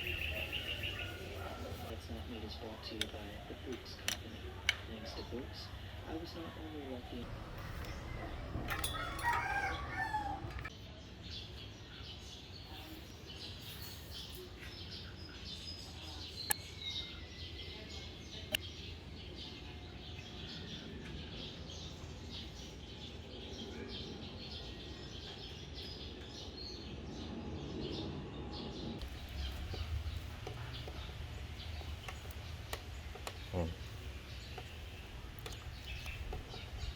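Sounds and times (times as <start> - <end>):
low hum: 7.0 - 10.7
rooster crowing: 7.9 - 10.7.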